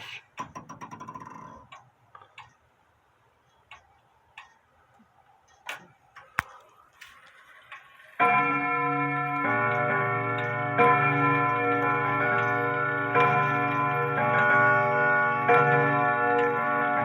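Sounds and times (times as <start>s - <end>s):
grandfather clock ticking: 0.2s - 2.7s, 3.5s - 4.7s, 7.6s - 17.0s
clock chime rod ringing: 8.2s - 17.0s.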